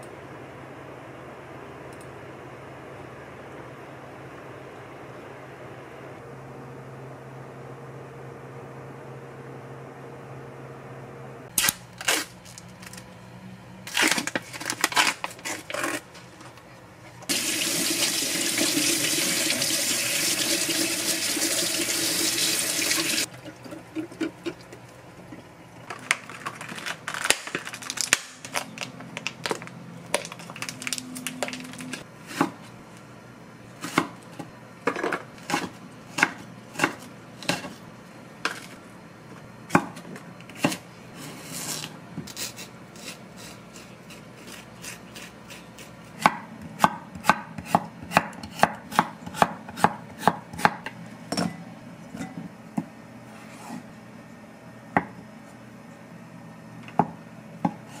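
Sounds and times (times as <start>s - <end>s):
water running from a tap: 17.3s - 23.3s.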